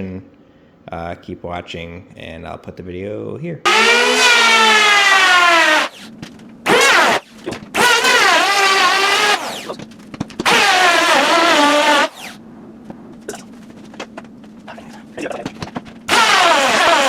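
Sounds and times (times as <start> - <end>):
electric hand planer whining: 3.7 - 6.1, 6.7 - 9.8, 10.4 - 12.4, 16.1 - 17.0.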